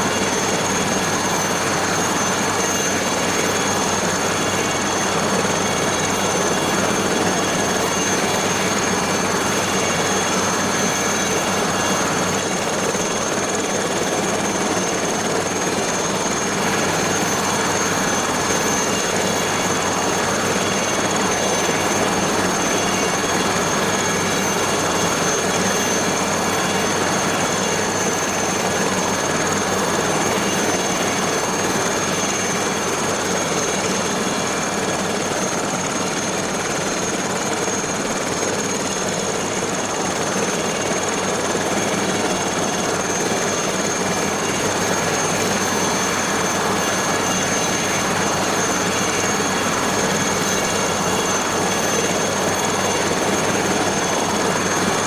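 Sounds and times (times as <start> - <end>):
helicopter engine and rotor: 0.0 - 55.0
turbine high whine: 0.0 - 55.0.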